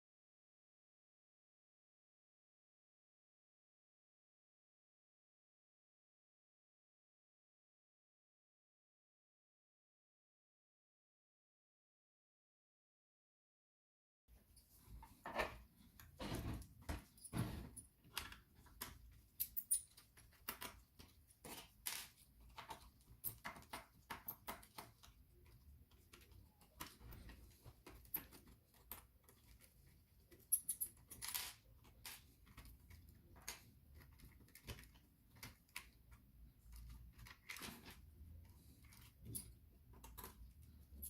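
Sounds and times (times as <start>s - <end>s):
small parts and tools clicking: 16.8s - 41.0s.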